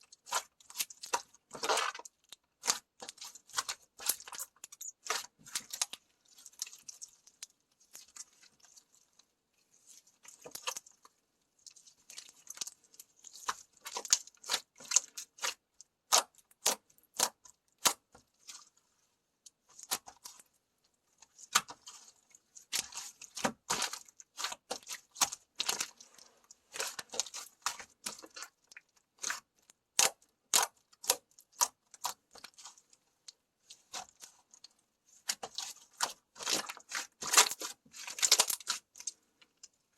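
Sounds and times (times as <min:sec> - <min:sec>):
slime squishing and popping: 0:35.2 - 0:39.1.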